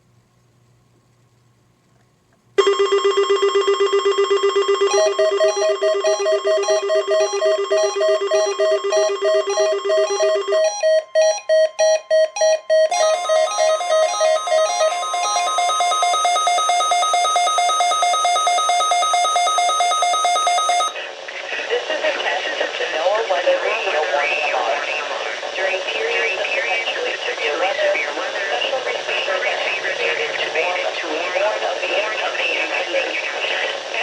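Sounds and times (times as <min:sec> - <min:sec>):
pulsing electronic alarm beeps: 0:03.9 - 0:20.9.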